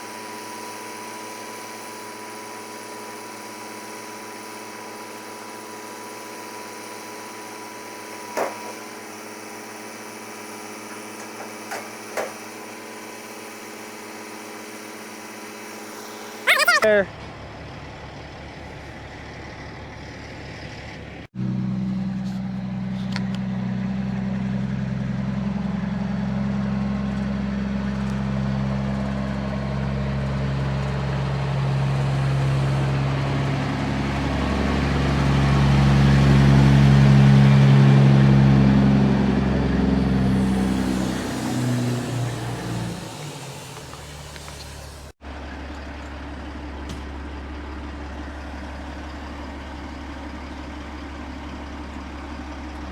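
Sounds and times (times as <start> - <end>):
truck diesel engine running: 16.9 - 52.9.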